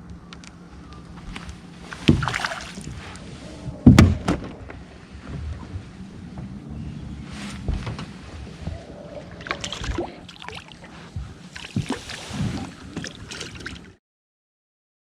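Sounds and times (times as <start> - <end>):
low steady hum: 0.0 - 13.9
water splashing: 2.0 - 3.2, 9.2 - 14.0.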